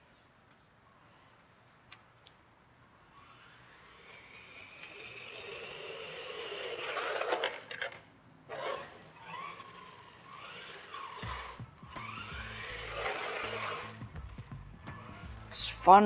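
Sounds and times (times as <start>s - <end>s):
electric motors whining: 2.9s - 16.0s.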